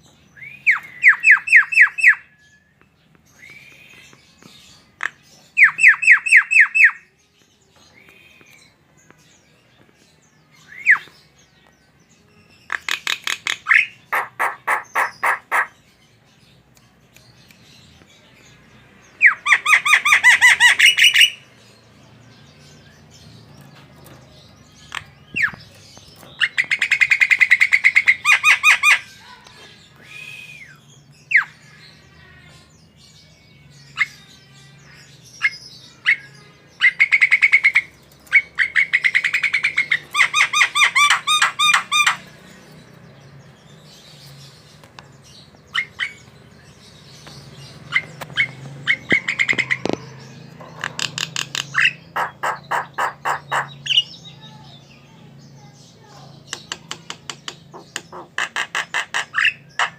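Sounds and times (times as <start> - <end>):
bird singing harsh repeated notes: 0.0 - 2.4, 4.8 - 7.2, 12.6 - 15.9, 19.2 - 21.5, 33.9 - 59.9
bird whistles and squawks: 12.7 - 15.8, 29.9 - 31.5.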